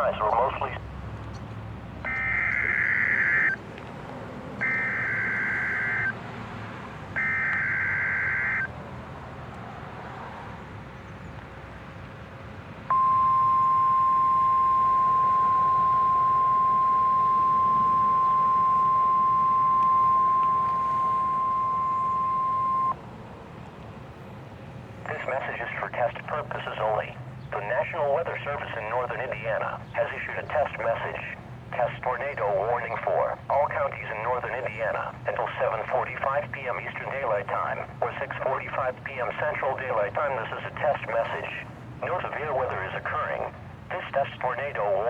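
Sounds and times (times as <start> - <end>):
steady single-pitch alert tone: 4.6 - 6.1, 7.2 - 8.7, 12.9 - 23.0.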